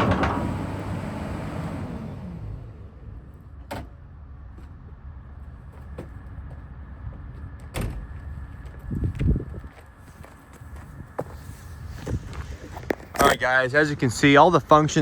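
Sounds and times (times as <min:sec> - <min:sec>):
heavy thump: 0:00.0 - 0:00.6
sharp metallic clunks: 0:00.0 - 0:00.7
excavator diesel engine rumbling: 0:00.0 - 0:08.6.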